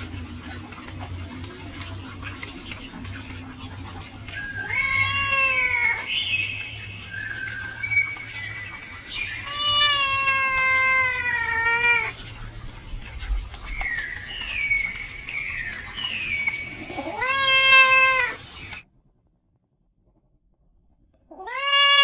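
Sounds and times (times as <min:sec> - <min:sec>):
cat meowing: 0:04.4 - 0:06.1, 0:09.4 - 0:12.2, 0:16.9 - 0:18.4, 0:21.3 - 0:22.0.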